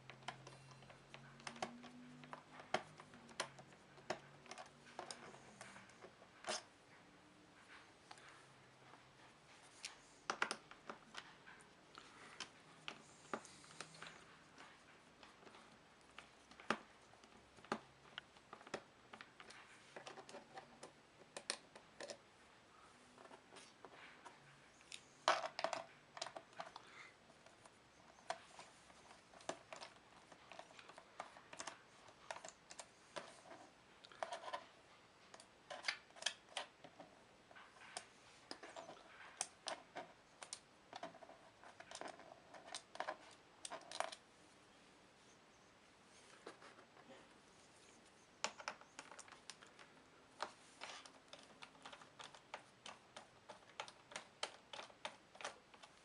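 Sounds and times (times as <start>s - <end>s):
screwdriver and screws clicking on plastic: 0.0s - 6.7s, 48.4s - 56.0s.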